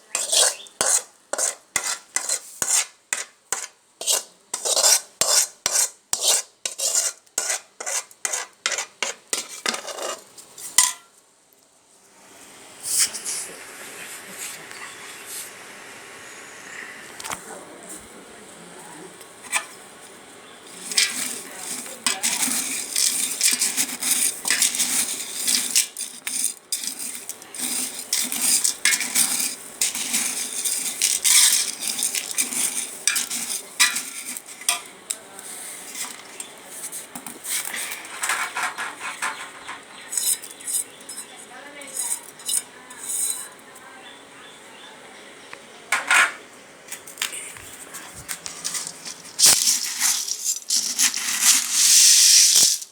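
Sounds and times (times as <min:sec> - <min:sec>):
metal utensils clinking and scraping: 0:00.1 - 0:11.1, 0:19.4 - 0:19.8, 0:20.6 - 0:43.6, 0:47.9 - 0:52.9.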